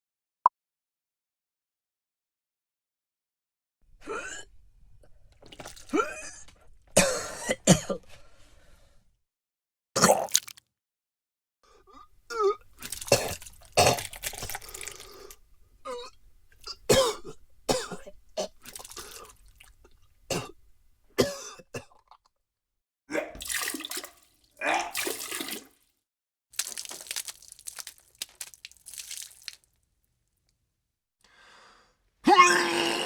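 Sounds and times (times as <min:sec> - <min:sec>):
person retching and gagging: 0:05.4 - 0:07.9, 0:10.0 - 0:10.6, 0:12.0 - 0:20.6, 0:21.2 - 0:22.4, 0:23.1 - 0:25.7, 0:26.6 - 0:29.7, 0:32.3 - 0:33.0
vomit spattering: 0:10.0 - 0:10.6, 0:12.8 - 0:15.1, 0:23.4 - 0:25.7, 0:26.6 - 0:29.8.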